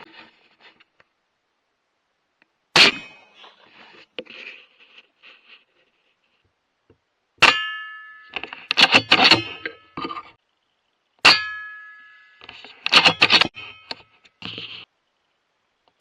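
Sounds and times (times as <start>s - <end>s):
sharp metallic clangs: 2.8s - 3.7s, 7.4s - 10.4s, 11.2s - 14.2s
clinking rattling hits: 11.2s - 14.0s.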